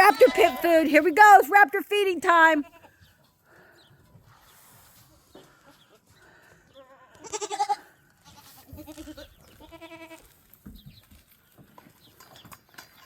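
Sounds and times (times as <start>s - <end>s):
goat kids bleating: 0.0s - 1.3s, 2.4s - 3.1s, 6.8s - 10.4s.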